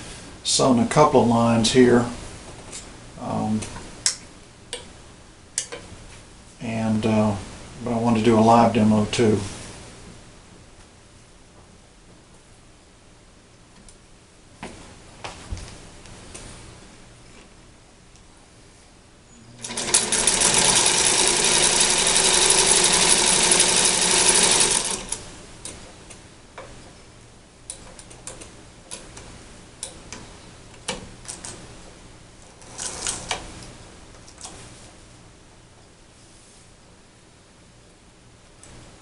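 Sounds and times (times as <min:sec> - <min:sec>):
sewing machine stitching: 0:19.6 - 0:25.2, 0:32.6 - 0:33.4.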